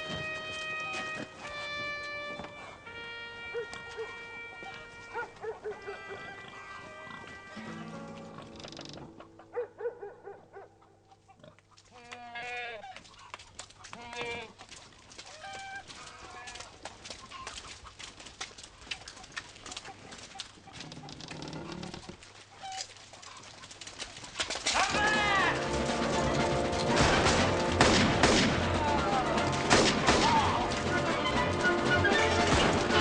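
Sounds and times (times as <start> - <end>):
chickens clucking: 7.6 - 9.7, 19.0 - 24.5.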